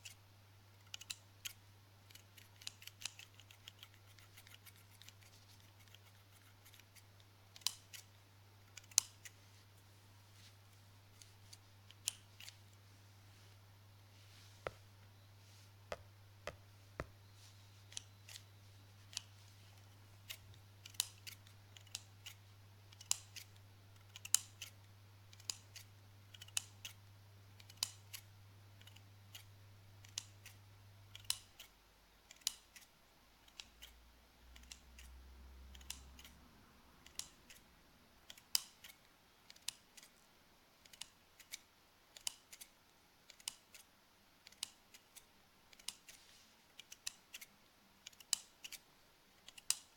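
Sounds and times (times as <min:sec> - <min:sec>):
faint low hum: 0:00.0 - 0:49.9
scissors snipping: 0:00.8 - 0:09.4, 0:17.9 - 0:27.0, 0:27.6 - 0:36.4, 0:37.0 - 0:37.6, 0:38.3 - 0:40.2, 0:40.8 - 0:46.2, 0:46.8 - 0:48.8, 0:49.4 - 0:49.9.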